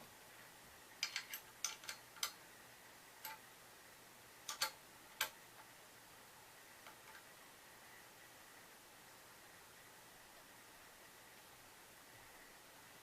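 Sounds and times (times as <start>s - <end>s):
metal parts clicking together: 1.0s - 2.4s, 4.5s - 5.4s.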